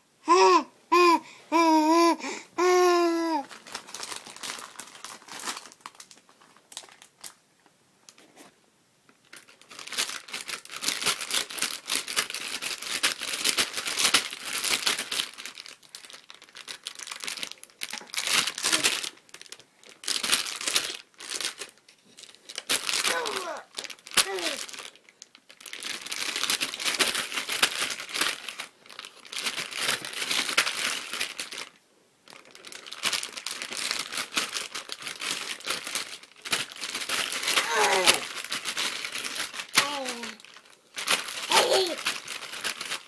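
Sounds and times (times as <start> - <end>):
baby squealing: 0.3 - 3.5, 23.1 - 23.7, 37.6 - 38.2, 41.5 - 42.0
crumpling and crinkling: 2.6 - 43.0.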